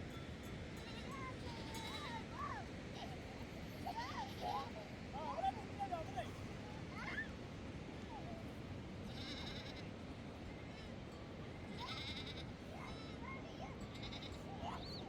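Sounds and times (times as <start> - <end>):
flock animals bleating: 9.2 - 9.9, 11.8 - 12.5.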